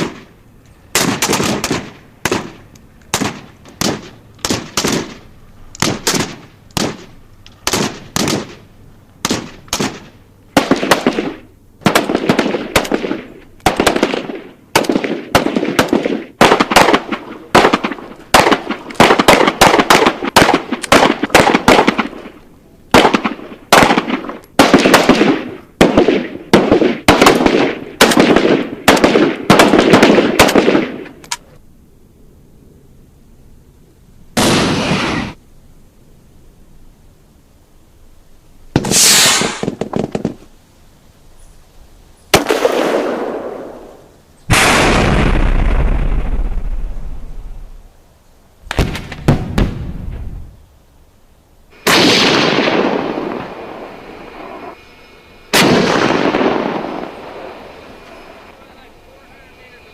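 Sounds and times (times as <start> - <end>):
automatic gunfire bursts: 0.9 - 5.2, 5.8 - 8.6, 9.2 - 22.3, 22.9 - 31.0
single gunshots echoing: 5.8 - 8.6, 9.2 - 31.2, 34.4 - 35.4, 42.3 - 46.7, 51.8 - 54.8, 55.5 - 57.7.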